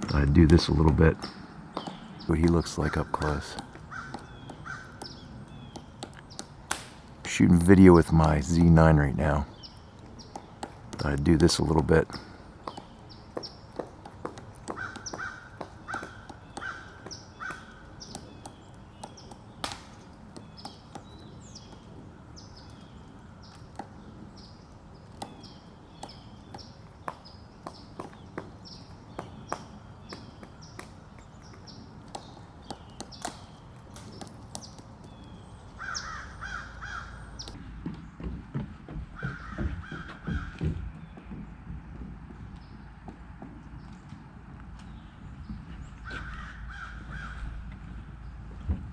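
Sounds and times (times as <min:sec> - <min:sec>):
woodpecker knocking on wood: 0:01.7 - 0:37.6
bird call notes: 0:01.8 - 0:37.6.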